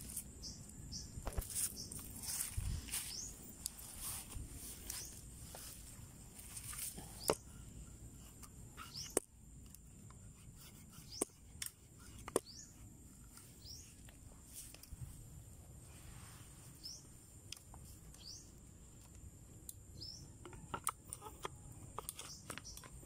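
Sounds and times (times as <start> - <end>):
birds chirping: 0.0 - 8.0, 8.7 - 9.3, 10.2 - 14.1, 16.7 - 17.2, 18.1 - 18.6, 19.9 - 20.7, 22.1 - 23.0.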